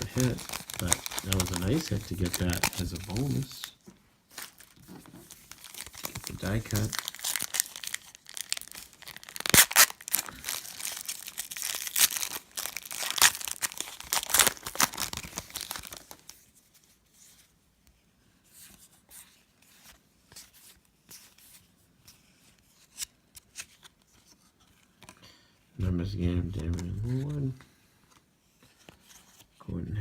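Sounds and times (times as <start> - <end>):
wrapper tearing and crinkling: 0.0 - 16.4
cards rustling and ticking: 0.0 - 16.5, 26.4 - 29.5.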